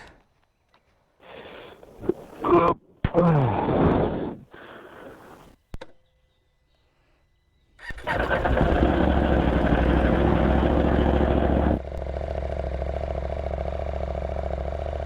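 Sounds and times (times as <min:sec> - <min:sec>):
motorcycle engine starting and idling: 0:07.8 - 0:15.0.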